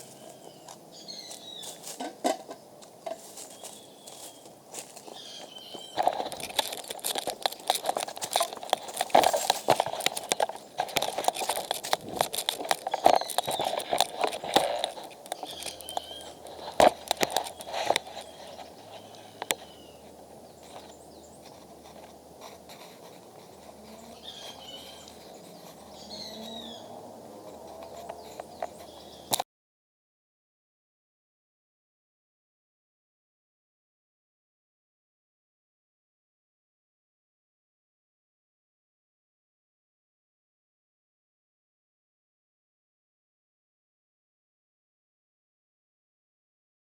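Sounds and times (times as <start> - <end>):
crackling and rustling: 0.0 - 29.4
faint bird chirps: 3.4 - 6.0, 23.9 - 27.0.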